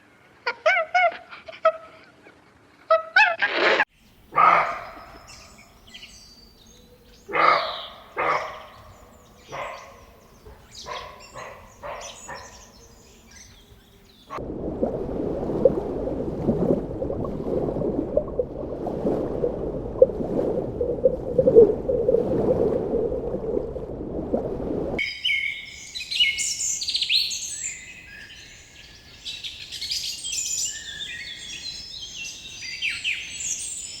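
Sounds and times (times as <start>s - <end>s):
dense low noise: 14.4s - 25.0s.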